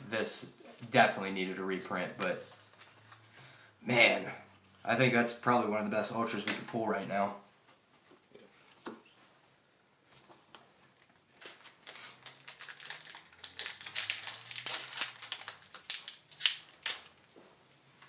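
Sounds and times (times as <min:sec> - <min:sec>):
foil wrapper tearing and crinkling: 0:11.1 - 0:17.4.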